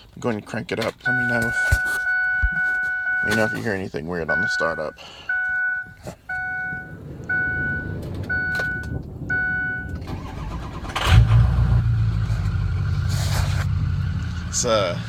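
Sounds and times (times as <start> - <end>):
car warning chime beeping: 1.0 - 10.7
engine cranking and idling: 1.0 - 15.0.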